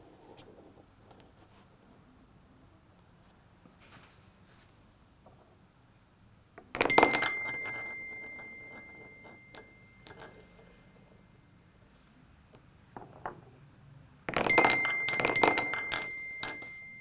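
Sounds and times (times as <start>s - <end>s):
marble clicking on wooden blocks: 6.6s - 10.9s, 14.3s - 16.8s
marble clattering on metal keys: 6.7s - 11.2s, 14.3s - 17.0s.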